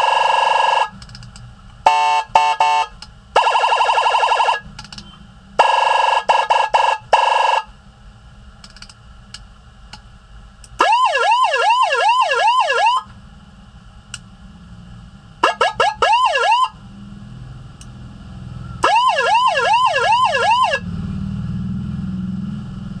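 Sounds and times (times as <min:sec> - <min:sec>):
electronic siren warbling and yelping: 0:03.4 - 0:04.7, 0:10.8 - 0:13.1, 0:15.4 - 0:16.8, 0:18.6 - 0:20.9.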